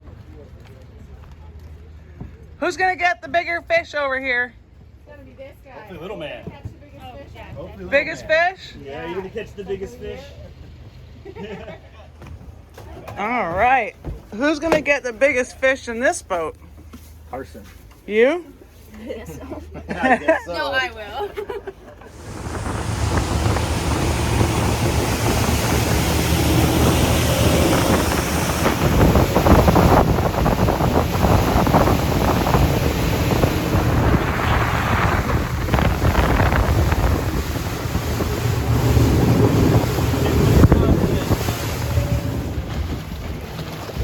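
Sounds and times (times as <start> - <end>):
motorboat engine droning: 22.1 - 44.0
rushing water: 22.1 - 44.0
wind buffeting microphone: 22.1 - 44.0.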